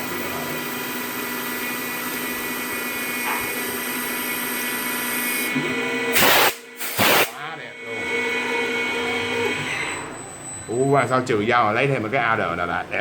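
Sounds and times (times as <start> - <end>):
lathe machine whine: 0.0 - 10.6
high hiss: 6.2 - 7.4.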